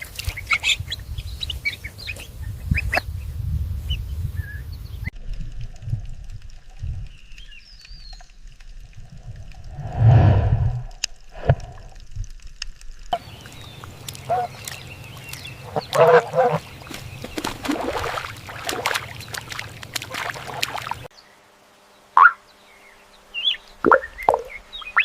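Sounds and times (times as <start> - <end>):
animal calls: 13.2 - 17.8.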